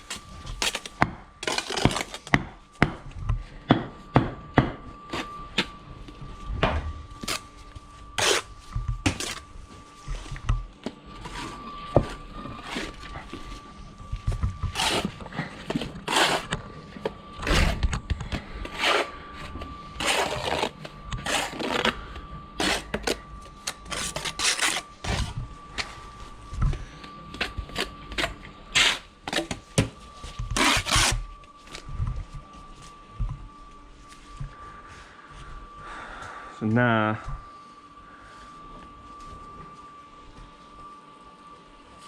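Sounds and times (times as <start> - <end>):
trowel scraping mortar: 8.2 - 9.4, 14.7 - 16.5, 18.6 - 19.1, 19.9 - 22.0, 22.6 - 23.2, 23.8 - 25.4, 27.7 - 29.1, 30.5 - 31.3.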